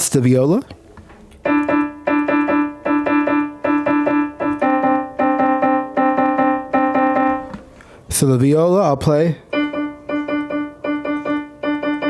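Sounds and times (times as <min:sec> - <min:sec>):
piano quick repeated notes: 0:01.4 - 0:07.8, 0:09.5 - 0:12.0.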